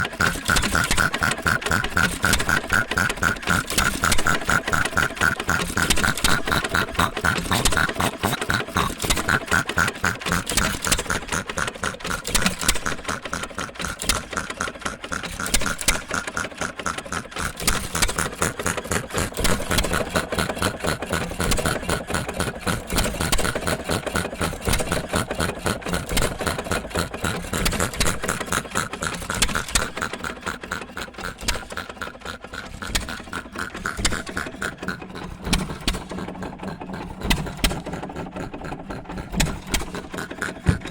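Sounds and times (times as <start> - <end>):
gas engine clattering: 0.0 - 40.9.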